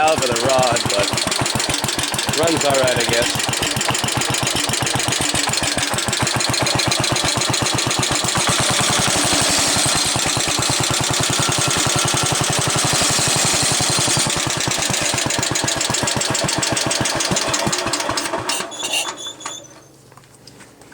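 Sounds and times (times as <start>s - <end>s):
engine knocking: 0.0s - 18.7s
single-cylinder engine running: 0.0s - 19.5s.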